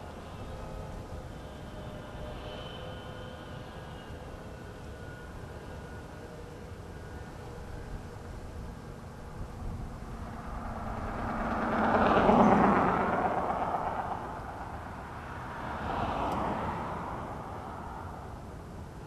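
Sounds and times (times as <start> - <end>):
vehicle passing by: 9.6 - 18.4.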